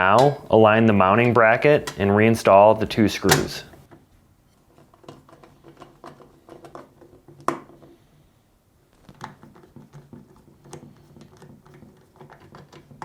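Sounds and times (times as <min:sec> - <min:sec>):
metal bracket and screws clicking: 0:01.1 - 0:02.2.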